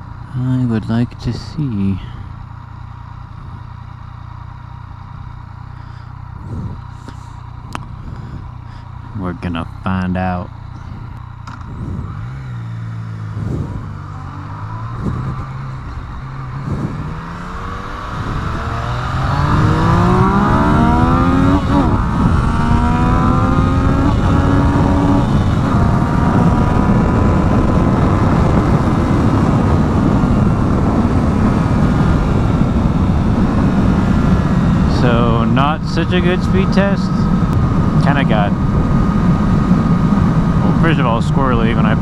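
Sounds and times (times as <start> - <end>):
motorcycle engine accelerating: 0.0 - 42.0
wind noise: 6.4 - 8.5, 10.7 - 12.4, 13.2 - 42.0.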